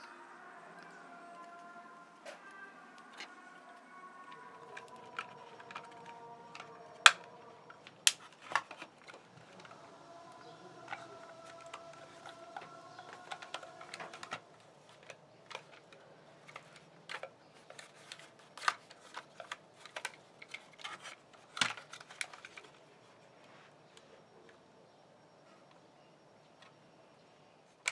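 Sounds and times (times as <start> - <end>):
small hard objects clicking: 7.9 - 8.8.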